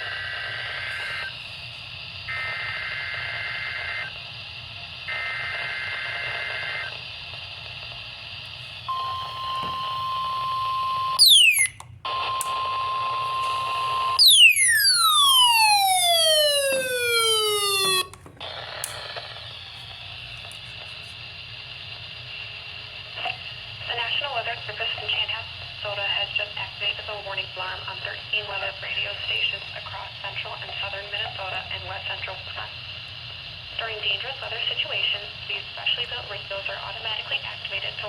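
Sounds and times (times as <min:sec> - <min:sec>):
radio static hiss: 0:00.0 - 0:04.2, 0:16.4 - 0:38.0
steady warning alarm tone: 0:08.6 - 0:18.2
falling pitch sweep: 0:14.2 - 0:18.1.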